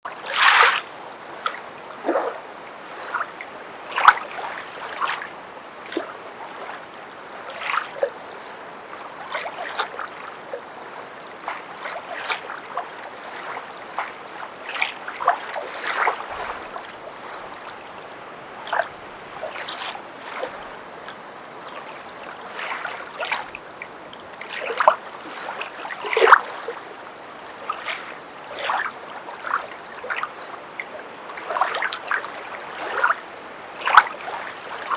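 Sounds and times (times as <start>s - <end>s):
low water wash: 0.1s - 34.9s
footsteps splashing through water: 11.4s - 26.8s, 31.4s - 33.2s.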